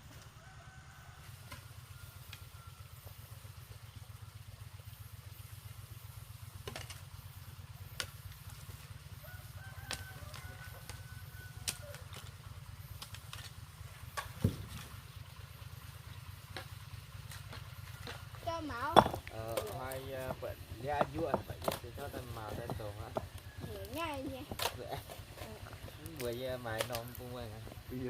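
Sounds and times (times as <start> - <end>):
rooster crowing: 0.2 - 3.0, 9.2 - 12.2, 22.1 - 26.8.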